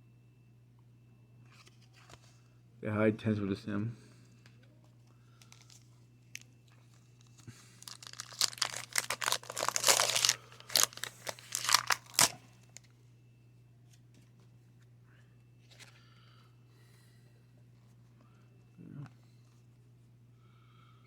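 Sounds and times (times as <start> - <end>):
paper wrapper tearing and crinkling: 7.8 - 12.4.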